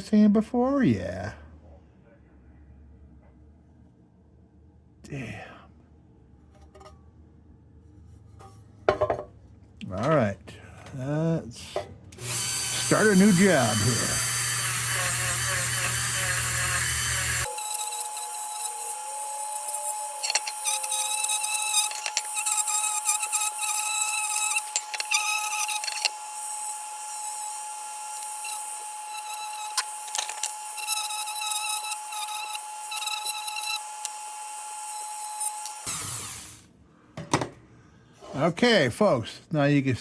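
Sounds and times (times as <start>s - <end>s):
electric power tool whining: 12.2s - 36.6s.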